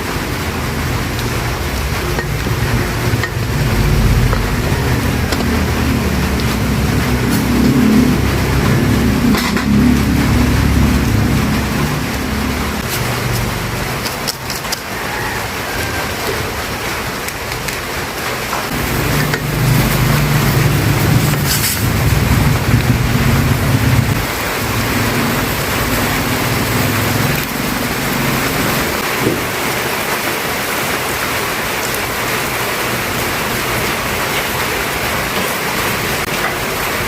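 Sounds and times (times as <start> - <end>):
low hum: 0.4 - 14.0.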